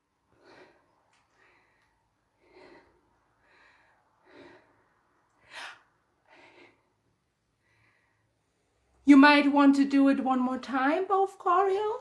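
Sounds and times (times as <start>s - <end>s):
person breathing hard: 0.2s - 8.4s.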